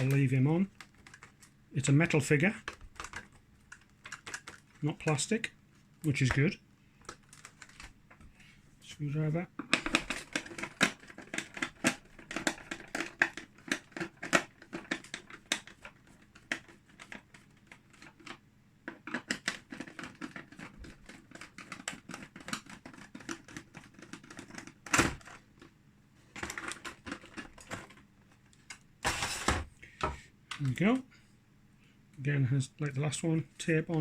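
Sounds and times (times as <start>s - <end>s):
screwdriver clicks and scrapes on plastic: 0.8s - 1.5s, 9.6s - 25.4s.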